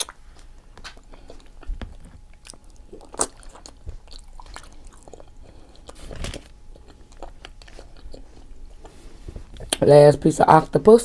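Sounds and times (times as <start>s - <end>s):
wet mouth sounds: 0.0s - 0.2s, 0.8s - 6.1s
close chewing and biting: 0.0s - 9.0s.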